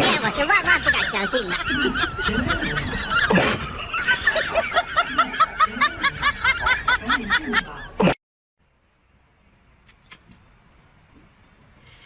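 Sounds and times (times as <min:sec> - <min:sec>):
high-pitched laughter: 0:00.0 - 0:08.2.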